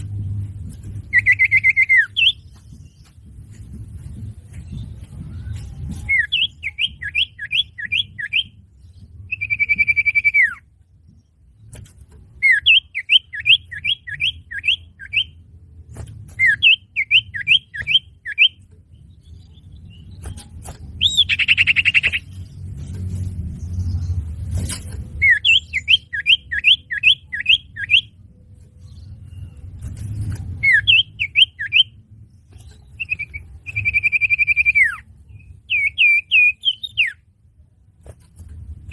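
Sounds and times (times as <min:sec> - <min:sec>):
low rumble: 0:00.0 - 0:09.9, 0:18.6 - 0:26.1
bird chirping quickly: 0:00.9 - 0:11.4, 0:12.3 - 0:15.4, 0:16.3 - 0:37.3.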